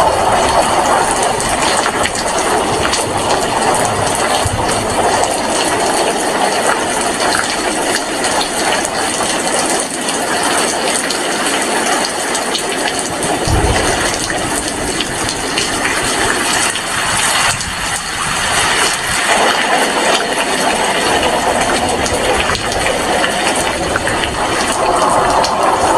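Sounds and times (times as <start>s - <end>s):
heavy rain falling: 0.0s - 25.9s
brief low thump: 13.4s - 14.4s.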